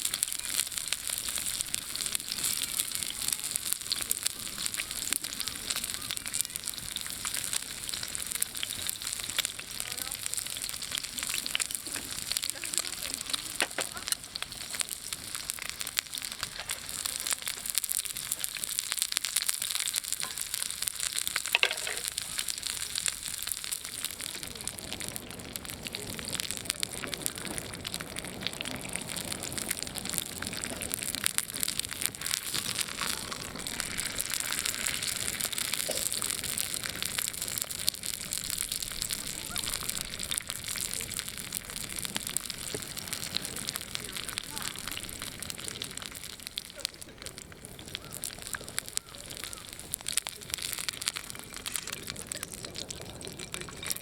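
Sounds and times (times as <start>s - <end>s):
meat sizzling over campfire: 0.0s - 54.0s
sharp fire pop: 21.4s - 22.2s.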